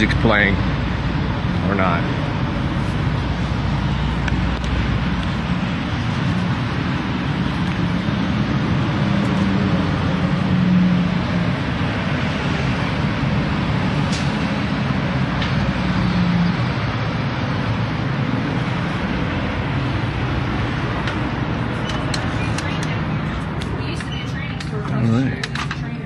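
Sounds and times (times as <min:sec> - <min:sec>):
low hum: 0:00.0 - 0:26.0
vehicle engines and traffic: 0:00.0 - 0:26.0.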